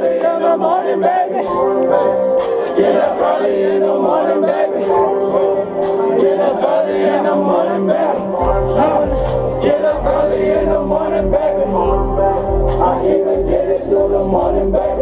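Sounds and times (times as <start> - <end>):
person singing: 0.0 - 15.0
trap music with synth melody: 0.0 - 15.0
booming bass: 8.4 - 15.0.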